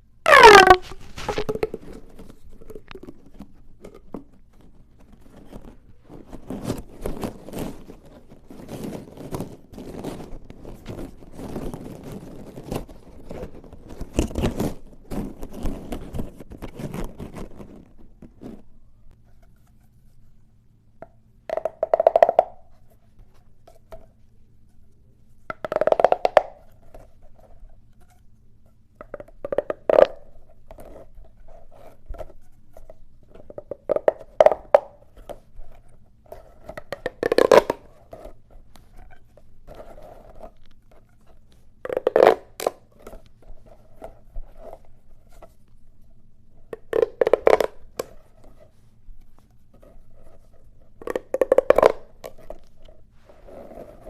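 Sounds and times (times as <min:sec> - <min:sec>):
low steady hum: 0:00.0 - 0:54.0
plastic pop tubes crackling: 0:00.2 - 0:06.4, 0:21.5 - 0:22.7, 0:25.5 - 0:27.0, 0:29.0 - 0:30.2, 0:33.4 - 0:35.5, 0:36.3 - 0:38.4, 0:41.8 - 0:43.4, 0:46.7 - 0:48.2, 0:51.0 - 0:52.7.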